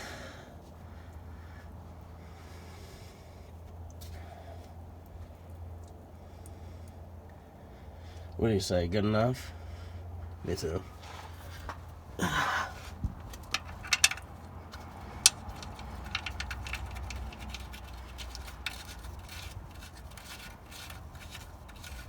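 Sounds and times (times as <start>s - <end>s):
metal tool clicks and taps: 13.2s - 19.5s.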